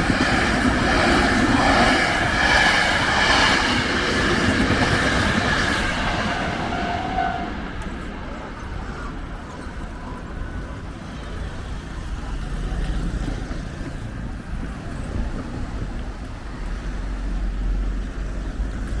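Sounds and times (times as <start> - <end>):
trucks and traffic passing: 7.4 - 19.0.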